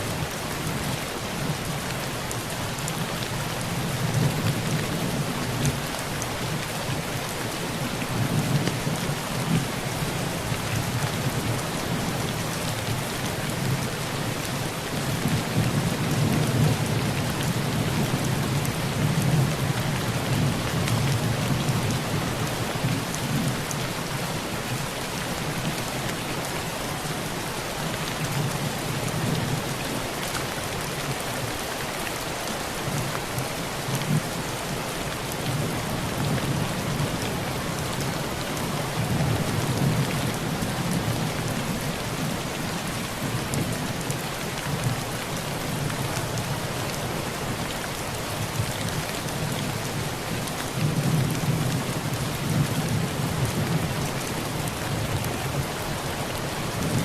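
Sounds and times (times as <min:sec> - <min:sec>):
heavy rain on a tin roof: 0:00.0 - 0:57.0.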